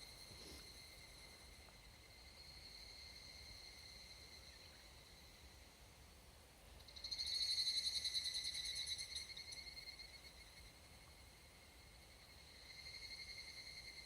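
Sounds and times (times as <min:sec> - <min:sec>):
faint cicadas singing: 0:00.0 - 0:14.0
cicada trilling call: 0:06.8 - 0:14.0.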